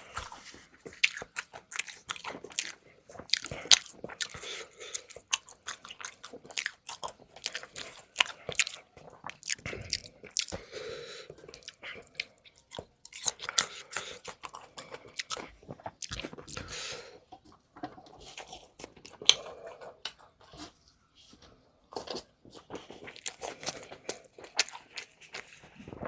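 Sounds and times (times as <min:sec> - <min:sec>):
wet mouth sounds: 0:00.0 - 0:10.8, 0:11.4 - 0:17.0, 0:22.7 - 0:25.7
person chewing crunchy food: 0:00.0 - 0:26.0.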